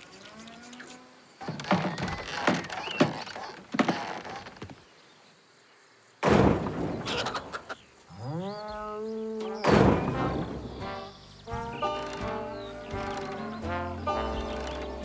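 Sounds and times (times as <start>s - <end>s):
loud cartoon thud: 6.2s - 7.5s, 9.6s - 11.0s.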